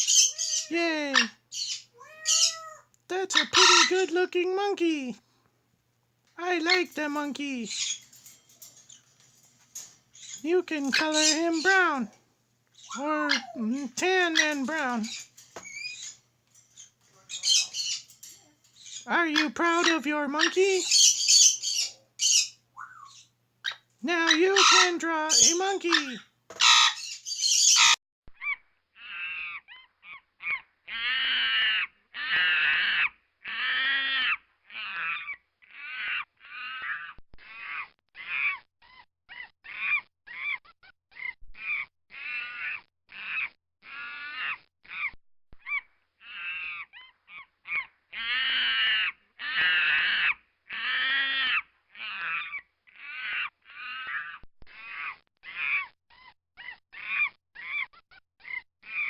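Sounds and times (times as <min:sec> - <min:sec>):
monkey screeching: 0:00.0 - 0:00.8, 0:01.5 - 0:04.0, 0:12.8 - 0:13.6, 0:17.3 - 0:18.1, 0:24.6 - 0:59.0.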